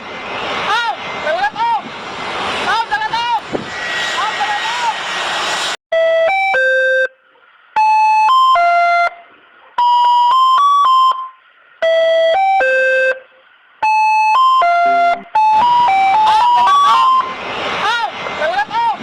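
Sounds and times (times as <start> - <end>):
multi-tone bus horn melody: 8.2 - 9.2, 13.9 - 17.3.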